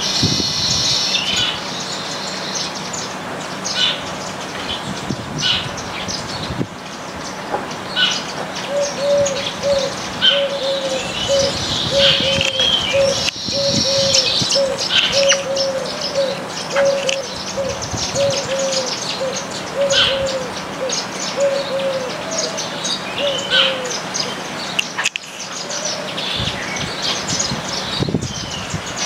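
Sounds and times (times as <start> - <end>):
small birds chirping: 0.0 - 29.0
bird low hooting call: 7.9 - 24.5, 25.6 - 28.5.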